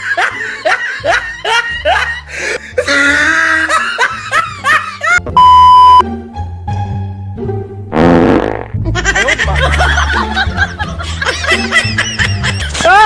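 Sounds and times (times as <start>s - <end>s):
laughter: 0.0s - 5.2s, 8.8s - 13.0s
background music: 0.0s - 13.0s
electronic beep: 5.3s - 6.0s.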